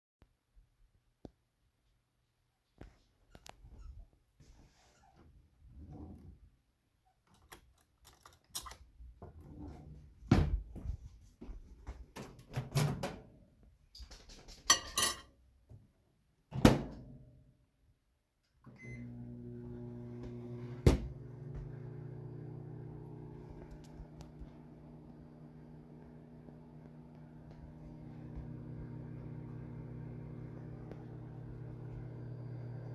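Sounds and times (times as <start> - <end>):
microwave oven running hum: 18.7 - 32.9.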